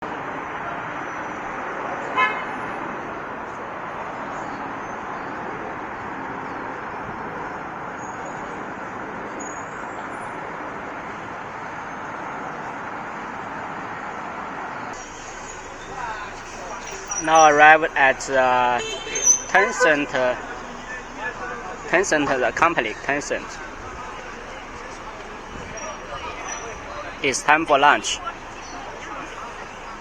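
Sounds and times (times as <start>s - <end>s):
city traffic noise: 0.0s - 30.0s
car horn toot: 2.0s - 2.8s, 15.0s - 23.7s.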